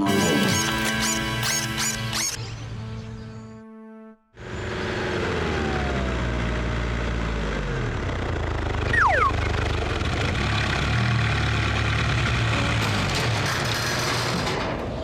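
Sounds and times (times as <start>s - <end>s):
car engine humming: 4.5s - 12.5s.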